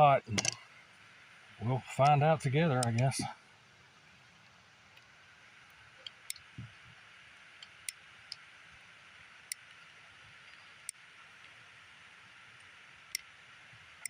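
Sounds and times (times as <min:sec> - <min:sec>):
revolver loading clicks: 0:00.3 - 0:00.6, 0:02.0 - 0:03.1.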